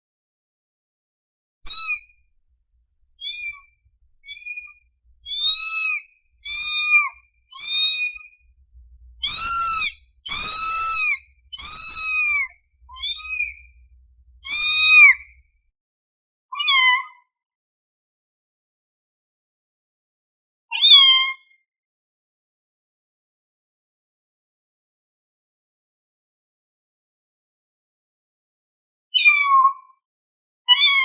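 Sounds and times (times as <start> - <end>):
kitten meowing: 1.7 - 2.0, 3.2 - 3.6, 4.2 - 8.3, 9.2 - 15.3, 30.7 - 31.0.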